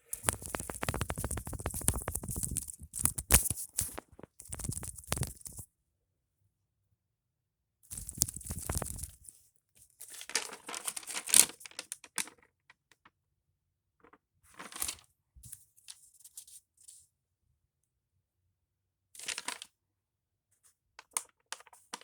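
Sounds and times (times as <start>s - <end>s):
paper rustling and crinkling: 0.1s - 5.6s, 7.9s - 9.3s.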